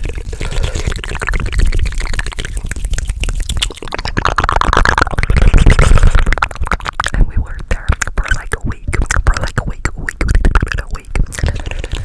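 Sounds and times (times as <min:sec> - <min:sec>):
asmr mouth clicks and pops: 0:00.0 - 0:12.0.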